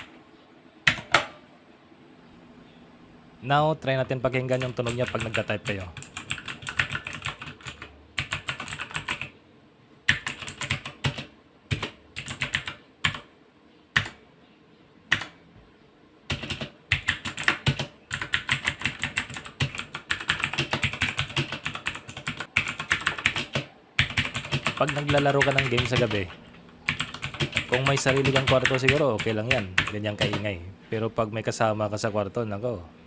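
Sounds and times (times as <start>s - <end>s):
clicky mechanical keyboard typing: 4.5s - 9.3s, 10.1s - 13.3s, 16.3s - 30.5s.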